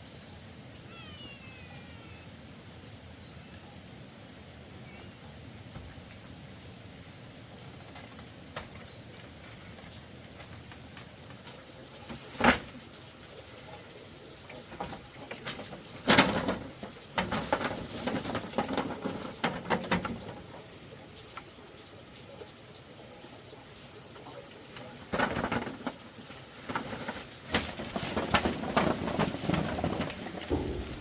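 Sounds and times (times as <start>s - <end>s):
clattering knocks and rustling: 14.7s - 20.7s, 25.1s - 31.0s
steady hiss: 20.4s - 31.0s.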